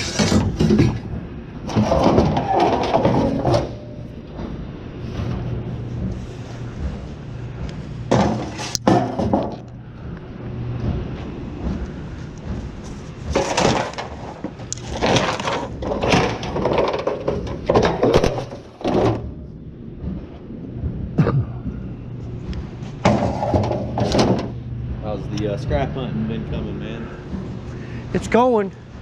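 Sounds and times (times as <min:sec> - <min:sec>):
scrap metal clattering: 0:00.0 - 0:09.8, 0:10.7 - 0:19.3, 0:22.7 - 0:24.7.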